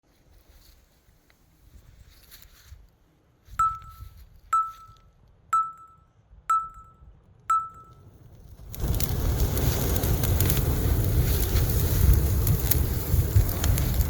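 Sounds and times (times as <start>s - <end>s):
high clear pings: 3.6s - 8.0s.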